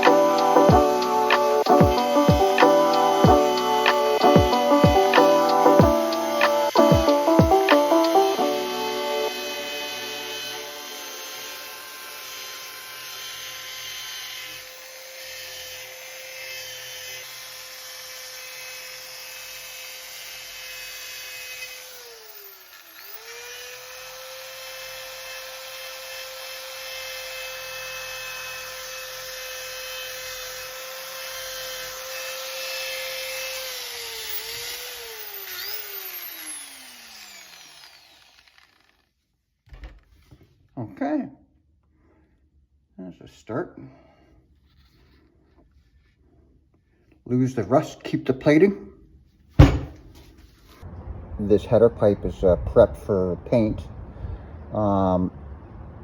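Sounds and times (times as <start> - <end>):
handheld power tool whining: 0.0 - 39.3.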